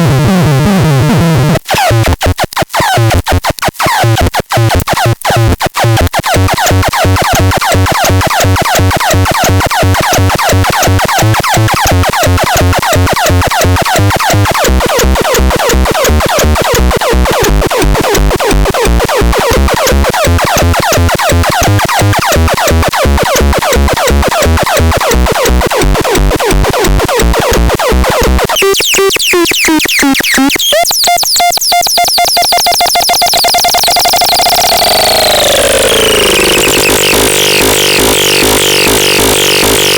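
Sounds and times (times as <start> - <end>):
electronic synthesizer music: 6.3 - 39.9.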